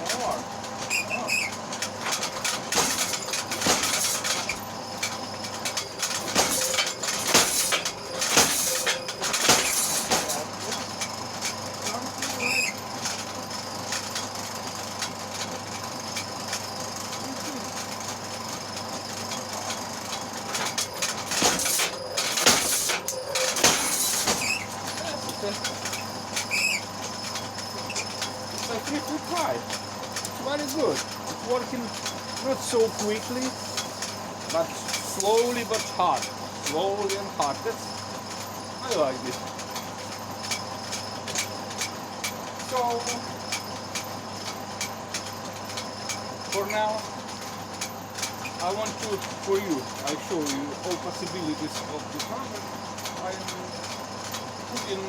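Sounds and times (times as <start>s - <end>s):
short squeaks: 0.8s - 11.1s, 12.3s - 12.9s, 20.4s - 29.4s
metallic clinking and rattling: 1.6s - 12.0s
power hammer heavy blows: 2.0s - 4.6s, 5.6s - 10.5s, 20.7s - 24.7s.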